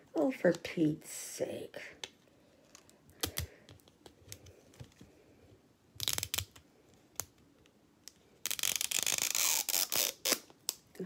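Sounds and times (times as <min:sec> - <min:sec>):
wrapping tearing: 0:06.0 - 0:06.6, 0:08.4 - 0:10.8
wrapping crinkling and clicking: 0:06.0 - 0:07.6, 0:08.4 - 0:10.9.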